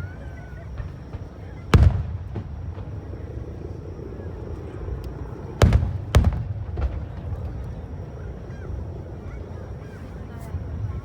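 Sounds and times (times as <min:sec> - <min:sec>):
low continuous rumble: 0:00.0 - 0:11.0
fireworks booming: 0:00.7 - 0:04.2, 0:04.8 - 0:07.7.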